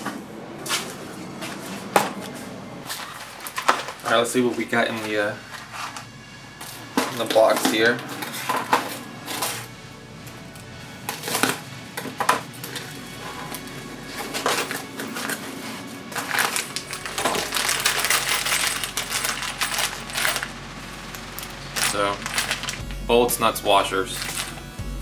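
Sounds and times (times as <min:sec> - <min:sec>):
metal bolts clinking: 0:06.6 - 0:24.7.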